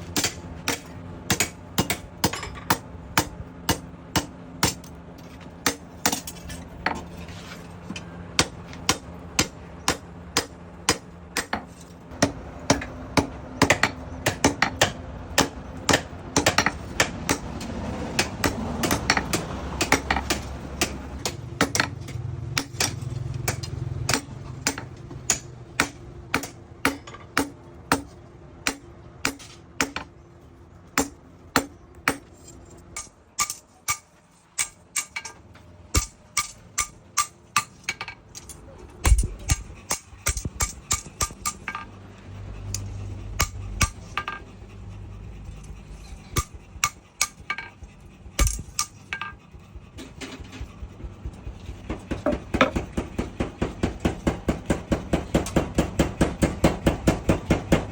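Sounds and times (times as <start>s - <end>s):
steady low hum: 0.0s - 57.9s
hammer beating steel on anvil: 0.1s - 5.0s, 5.6s - 7.0s, 8.4s - 30.1s, 31.0s - 38.2s, 39.0s - 41.9s, 43.3s - 44.4s, 46.4s - 47.7s, 51.8s - 57.9s.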